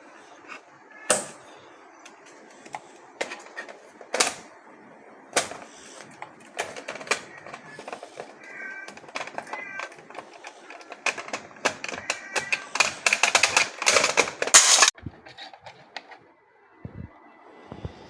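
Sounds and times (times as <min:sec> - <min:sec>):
clicks and knocks of hard objects: 0:02.0 - 0:04.5, 0:05.4 - 0:16.2.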